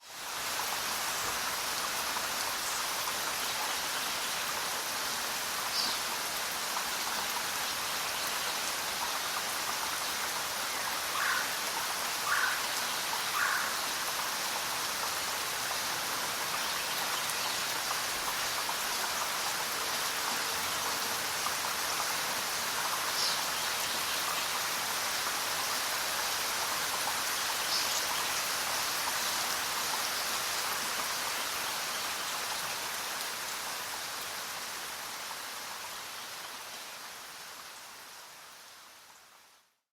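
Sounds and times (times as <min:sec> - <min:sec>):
steady rain: 0:00.0 - 0:39.9
lower bird calls: 0:12.2 - 0:13.8.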